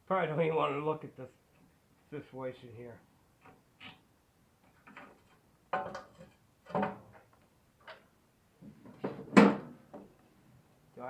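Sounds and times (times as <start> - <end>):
clanks of tools and metal parts: 4.8 - 8.1.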